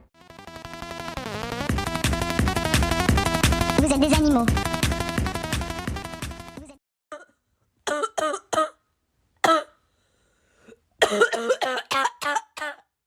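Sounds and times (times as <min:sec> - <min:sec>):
person coughing: 0:07.1 - 0:08.8, 0:09.4 - 0:09.8, 0:11.0 - 0:12.9.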